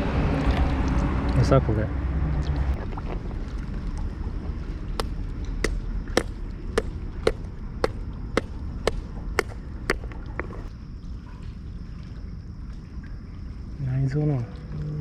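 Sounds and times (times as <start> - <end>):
sharp knocks of chopping: 5.0 - 10.2.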